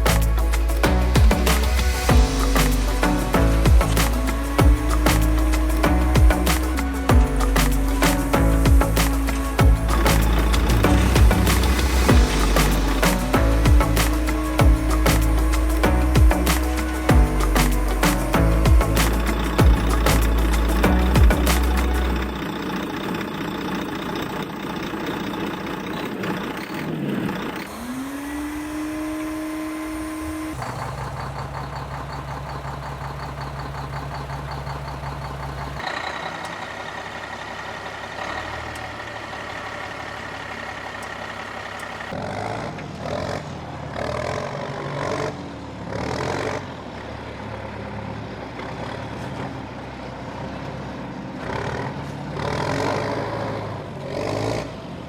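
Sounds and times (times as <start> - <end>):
choppy electronic bursts: 0.0 - 31.3
synthesized toy truck engine sounds: 0.0 - 49.6.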